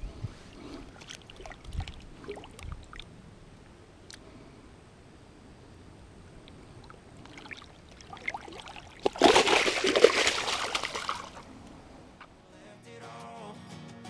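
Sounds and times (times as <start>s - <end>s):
water splashing and dribbling: 0.9s - 3.1s, 6.8s - 11.6s.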